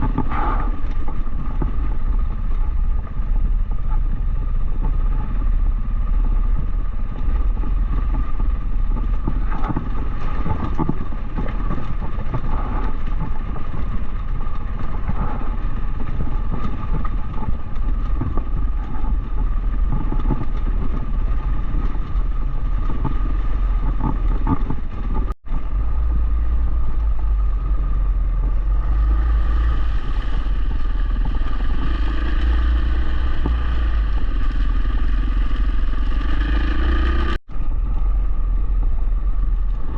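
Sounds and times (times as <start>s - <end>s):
irregular clatter: 0.0s - 38.1s
wind rumble on microphone: 0.0s - 39.9s
motorcycle engine: 25.5s - 39.6s.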